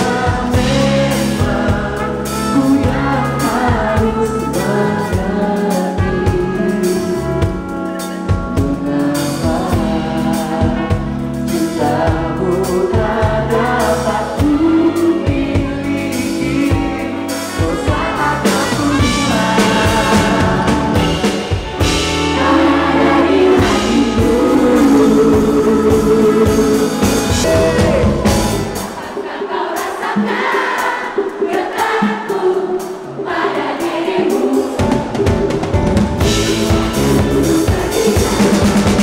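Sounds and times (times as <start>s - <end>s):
live pop-jazz band: 0.0s - 39.0s
vocal harmonies: 0.0s - 39.0s.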